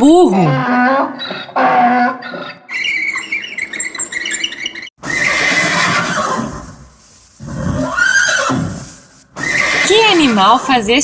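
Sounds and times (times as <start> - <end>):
horse whinnying: 5.0 - 6.8, 7.4 - 10.6.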